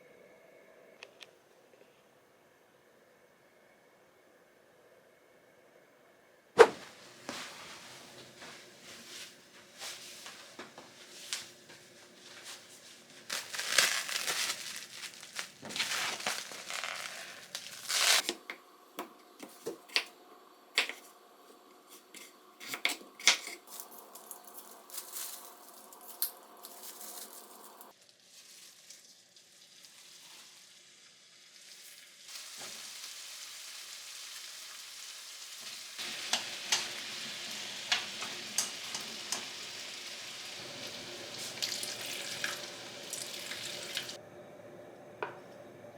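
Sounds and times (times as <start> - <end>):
food sizzling in a frying pan: 26.9 - 44.2.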